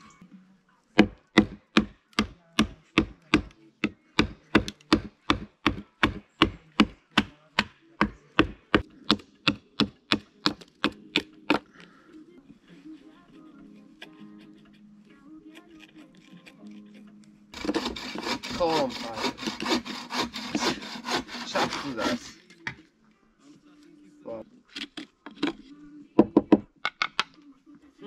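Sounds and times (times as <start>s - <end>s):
chopping strikes on wood: 1.0s - 11.7s.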